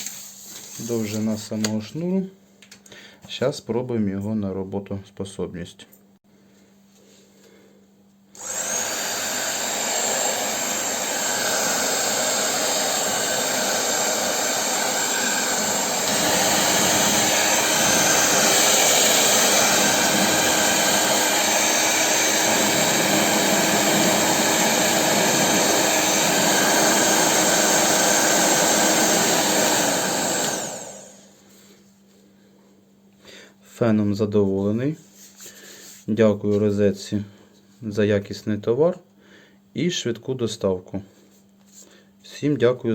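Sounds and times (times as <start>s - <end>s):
hair dryer blowing: 8.3s - 31.4s.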